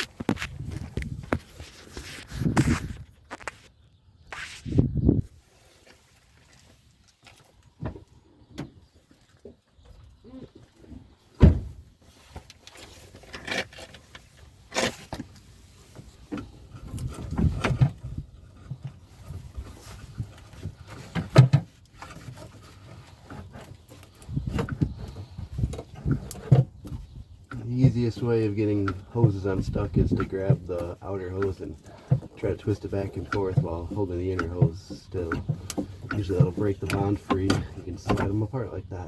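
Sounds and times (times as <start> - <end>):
clicks and scraping on plastic: 0.0 - 4.8, 12.2 - 38.4.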